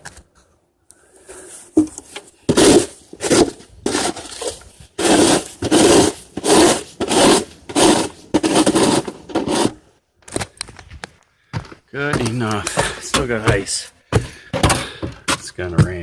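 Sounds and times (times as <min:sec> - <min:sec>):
shovel scraping ice: 0:01.4 - 0:09.8.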